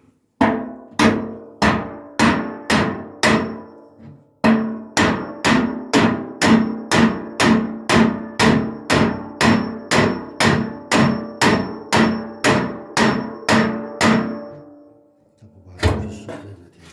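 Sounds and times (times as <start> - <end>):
hammer striking metal: 0.4 - 15.0.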